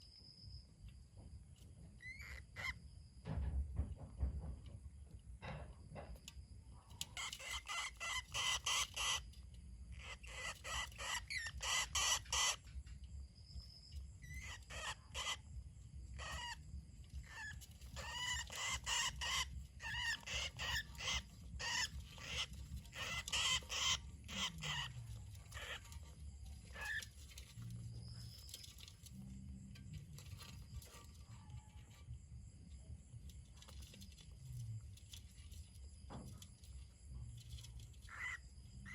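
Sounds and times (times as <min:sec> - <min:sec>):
budgerigar chicks chirping: 0:02.0 - 0:02.8, 0:07.1 - 0:09.3, 0:09.9 - 0:12.7, 0:14.2 - 0:15.5, 0:16.1 - 0:16.6, 0:17.2 - 0:27.2, 0:38.1 - 0:38.9.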